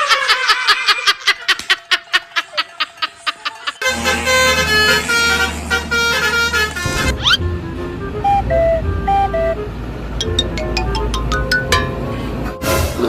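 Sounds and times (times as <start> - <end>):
multi-tone bus horn tune: 3.8 - 10.2
low engine rumble: 3.8 - 12.6.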